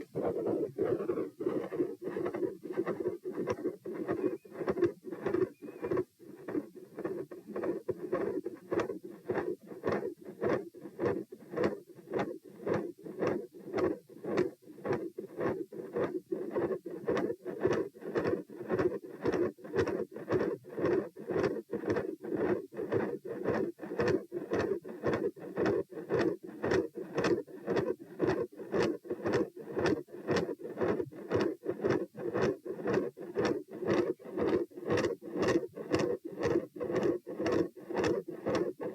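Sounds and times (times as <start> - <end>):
heart murmur: 0.0 - 10.0
heartbeat through stethoscope: 0.0 - 38.9.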